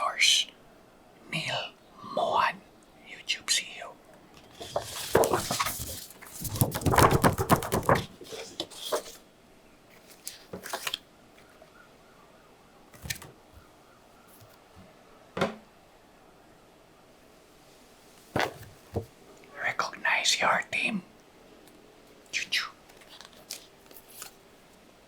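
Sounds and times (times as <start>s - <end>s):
paper rustling and crinkling: 4.4s - 9.2s, 9.9s - 11.0s, 22.9s - 24.9s.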